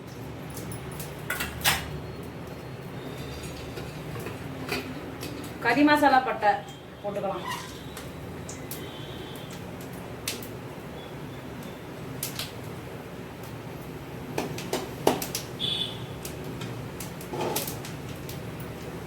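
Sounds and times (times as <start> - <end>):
spices popping in hot oil: 0.0 - 19.0.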